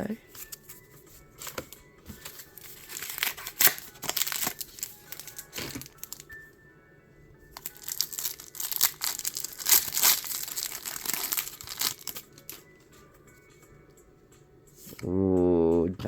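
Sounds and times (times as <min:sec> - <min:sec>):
faint background music: 0:00.0 - 0:16.0
foil wrapper crinkling and tearing: 0:01.4 - 0:06.3, 0:07.6 - 0:12.6.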